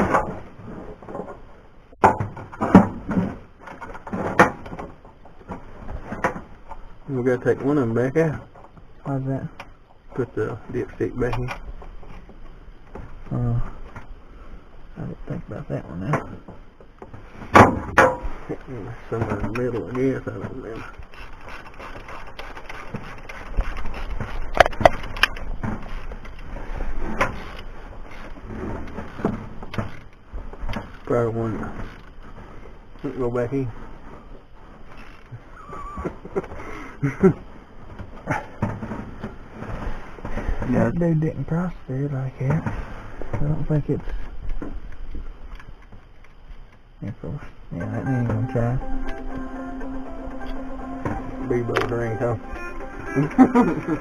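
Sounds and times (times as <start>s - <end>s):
sharp metallic knocks: 17.5s - 18.4s.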